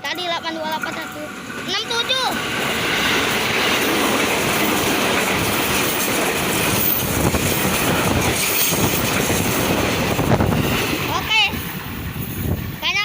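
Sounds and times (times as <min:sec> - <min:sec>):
clacks over rail joints: 0:00.0 - 0:11.8
train wheels rushing on rail: 0:00.0 - 0:13.0.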